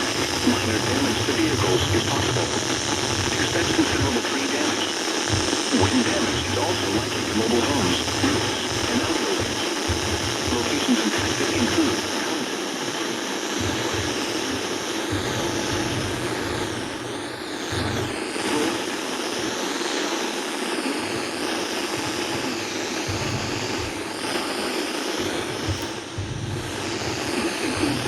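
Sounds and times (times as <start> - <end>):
steady rushing noise: 0.0 - 28.0
low rumbles: 25.3 - 28.0.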